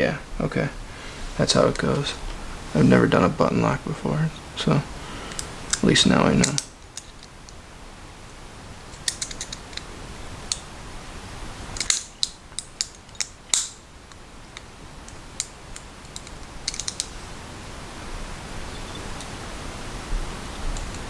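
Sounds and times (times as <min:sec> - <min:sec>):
folding knife parts clicking: 0:05.3 - 0:07.6, 0:08.9 - 0:09.9, 0:11.8 - 0:17.1.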